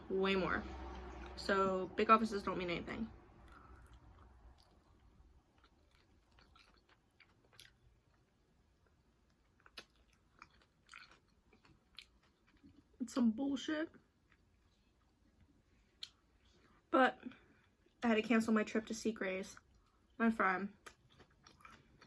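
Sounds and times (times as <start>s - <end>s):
person chewing: 3.4s - 13.0s, 14.2s - 16.7s, 20.8s - 22.0s.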